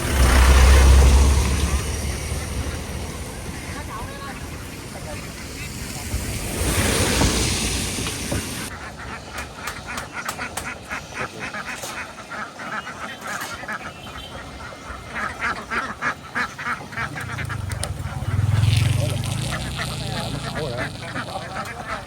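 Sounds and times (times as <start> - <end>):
low engine hum: 0.0 - 8.7, 16.9 - 22.0
ducks quacking: 0.0 - 22.0.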